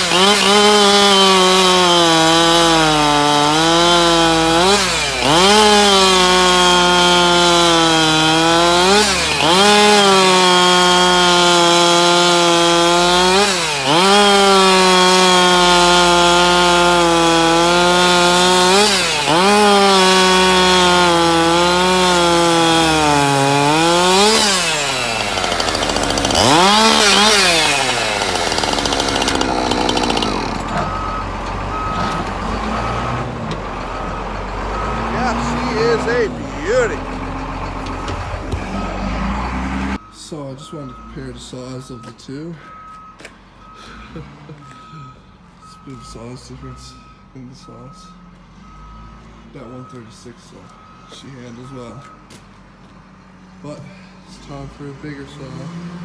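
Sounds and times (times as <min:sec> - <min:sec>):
chainsaw cutting wood: 0:00.0 - 0:40.0.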